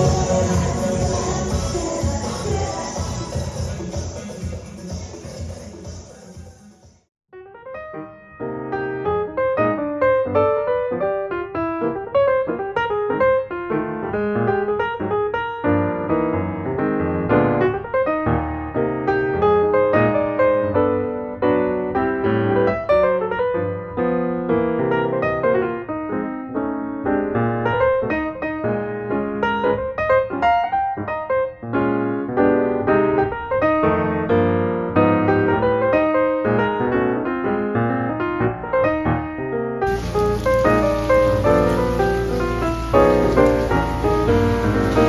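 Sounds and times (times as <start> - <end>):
piano music: 0.0 - 5.5, 7.3 - 45.0.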